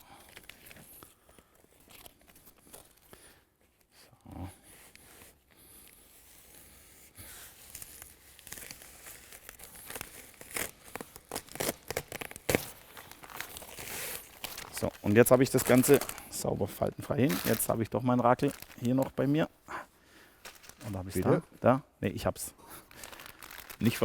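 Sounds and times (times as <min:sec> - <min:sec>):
tape liner peeling rustles: 0:00.2 - 0:19.4, 0:20.4 - 0:21.3, 0:22.7 - 0:24.0
sharp crackle: 0:22.9 - 0:24.0.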